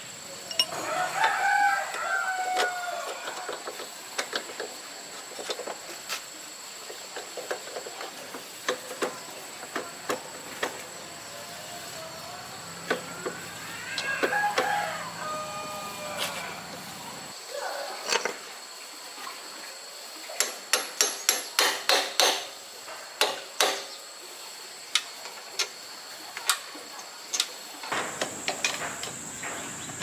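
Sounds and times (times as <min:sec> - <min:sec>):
rooster crowing: 0:00.6 - 0:03.6, 0:11.2 - 0:17.3.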